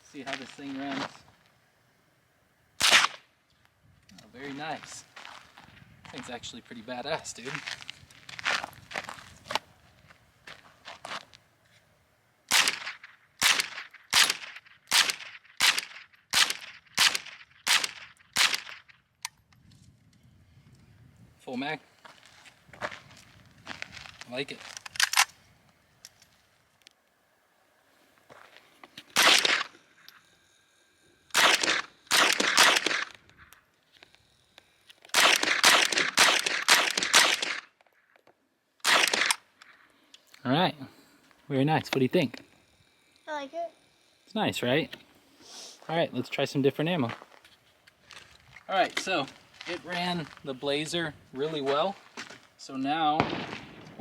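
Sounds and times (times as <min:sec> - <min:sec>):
rifle shots: 0:02.8 - 0:03.2, 0:12.5 - 0:18.9, 0:29.2 - 0:29.8, 0:31.3 - 0:33.2, 0:35.1 - 0:37.7, 0:38.8 - 0:39.4, 0:53.1 - 0:54.0.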